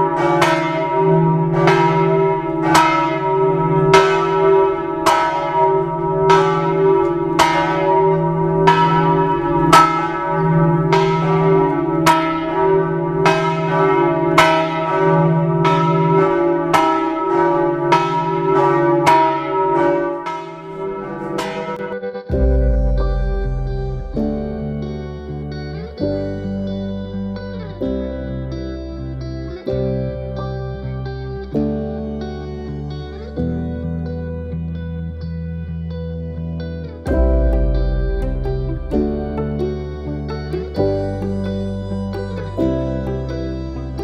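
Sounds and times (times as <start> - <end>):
church bell tolling: 0.0 - 26.9, 37.1 - 44.0
deep bell hum: 20.3 - 26.6, 37.1 - 44.0.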